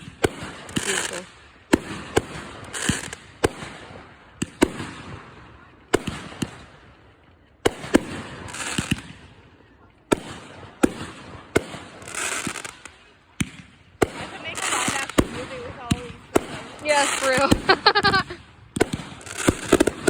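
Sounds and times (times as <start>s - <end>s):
fireworks crackle: 0.0s - 5.0s, 7.7s - 9.2s, 10.1s - 20.0s
fireworks bangs: 0.0s - 7.0s, 7.6s - 9.4s, 10.1s - 20.0s.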